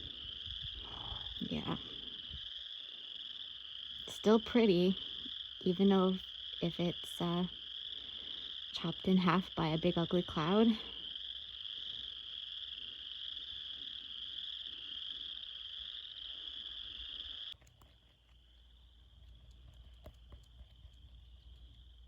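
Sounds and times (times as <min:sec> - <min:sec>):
chorus of frogs calling: 0:00.0 - 0:17.6.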